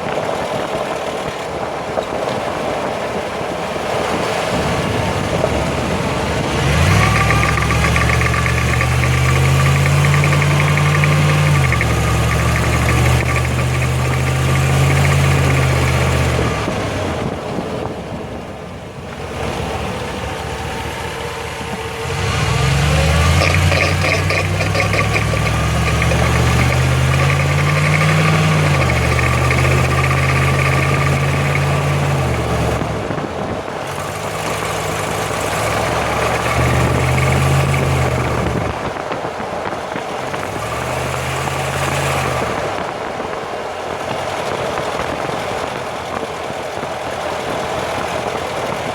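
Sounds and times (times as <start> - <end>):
engine drone pulling uphill: 0.0 - 48.9
differential whine: 6.5 - 17.3, 20.1 - 38.9.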